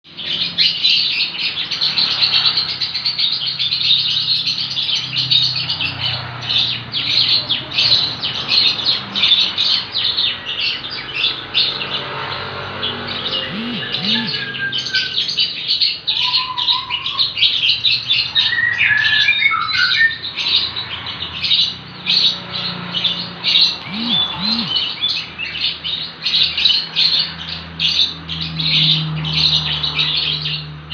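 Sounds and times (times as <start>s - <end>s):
faint low hum: 13.4s - 14.5s, 23.8s - 24.8s
bird chirping rapidly: 13.4s - 14.6s, 23.8s - 24.9s.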